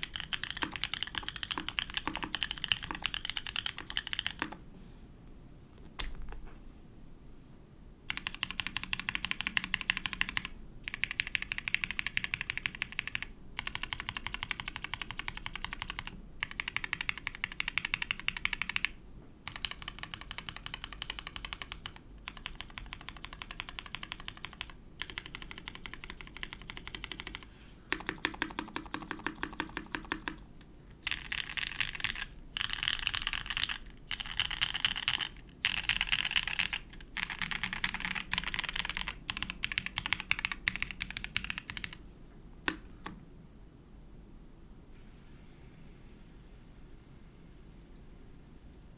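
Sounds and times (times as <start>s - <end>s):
fast typing on mechanical keyboard: 0.0s - 4.6s, 8.1s - 30.4s, 31.0s - 42.0s.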